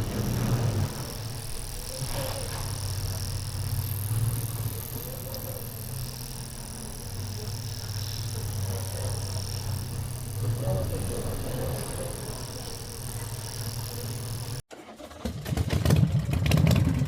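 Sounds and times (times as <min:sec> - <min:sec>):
misfiring car engine running: 0:00.0 - 0:14.6.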